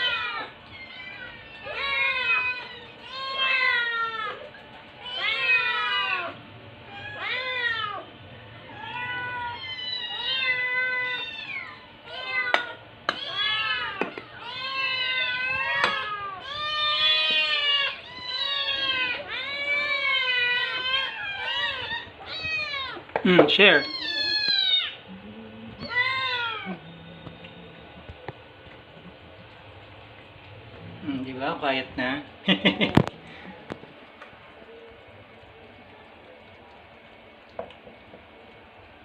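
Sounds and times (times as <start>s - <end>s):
kittens meowing: 0.0s - 27.5s.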